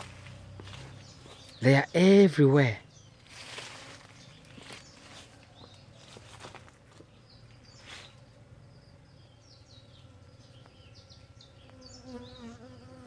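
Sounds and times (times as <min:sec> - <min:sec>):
bee droning close by: 0:07.0 - 0:13.0
bees buzzing: 0:07.1 - 0:13.0.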